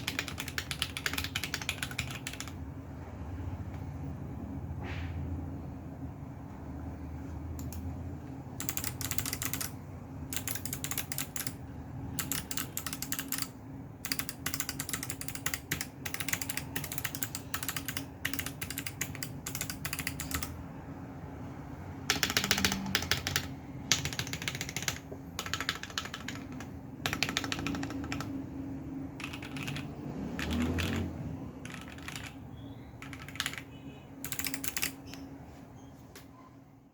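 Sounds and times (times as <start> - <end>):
mechanical keyboard key clacks: 0.0 - 2.6, 8.6 - 20.6, 22.1 - 28.4, 29.2 - 32.4, 33.0 - 35.2.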